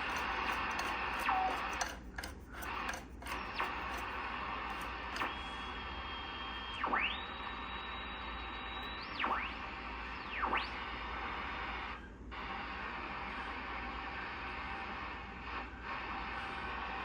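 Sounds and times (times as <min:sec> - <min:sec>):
heterodyne whistles: 0:05.3 - 0:09.3.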